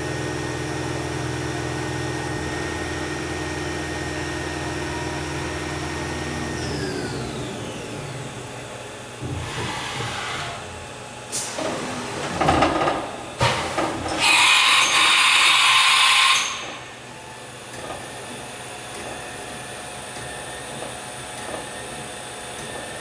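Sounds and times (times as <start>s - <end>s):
steady machine noise: 11.9s - 22.1s
machine hissing: 13.4s - 17.0s.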